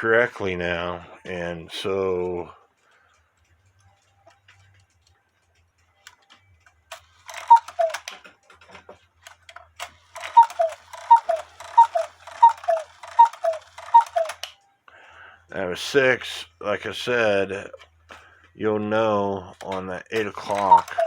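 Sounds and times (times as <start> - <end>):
two-note cuckoo calls: 7.3 - 8.2, 10.2 - 14.6, 20.4 - 21.0.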